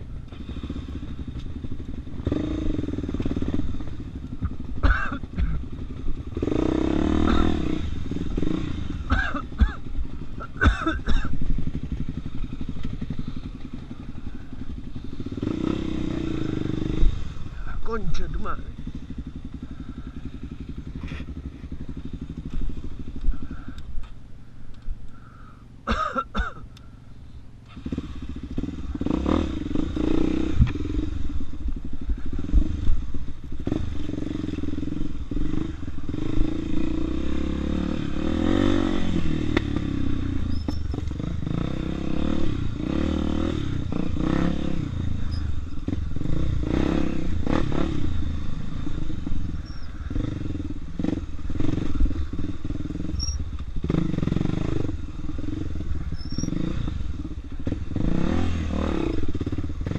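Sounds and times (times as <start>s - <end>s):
dirt bike engine: 0.0s - 59.9s
bike rattling and knocking: 8.4s - 16.2s.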